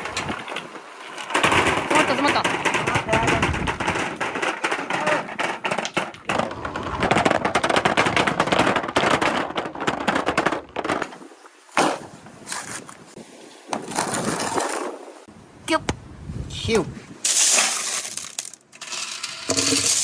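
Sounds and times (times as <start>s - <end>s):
marbles clacking down wooden track: 17.3s - 20.0s.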